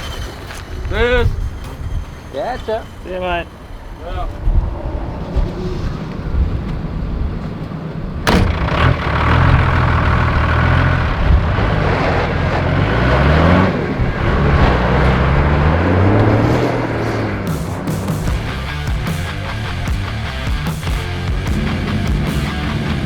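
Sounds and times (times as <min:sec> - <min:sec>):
engine accelerating through gears: 0:00.0 - 0:23.0
sharp knock: 0:08.3 - 0:09.0.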